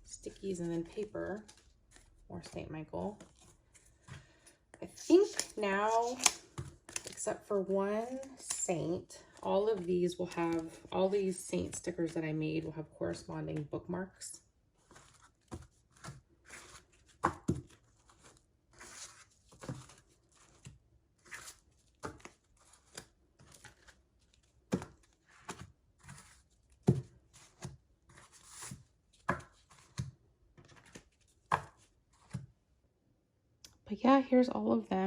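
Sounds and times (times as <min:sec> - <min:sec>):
paper wrappers rustling and tearing: 0:05.1 - 0:07.2.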